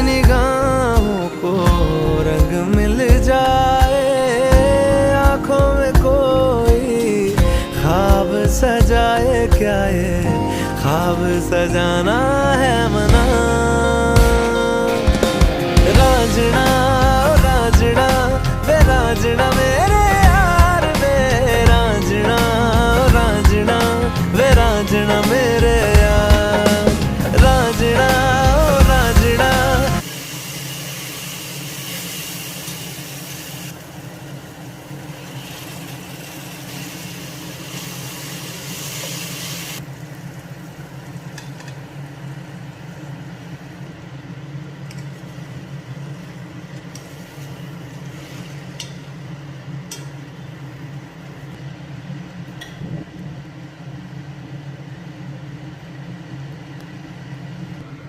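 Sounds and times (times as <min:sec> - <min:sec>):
hiss: 0:29.5 - 0:39.8.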